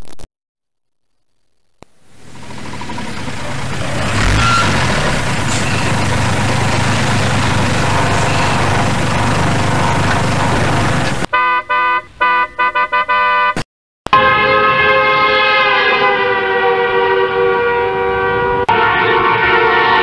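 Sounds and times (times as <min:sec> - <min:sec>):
car engine idling: 0:01.8 - 0:11.3
car horns honking: 0:02.3 - 0:20.0.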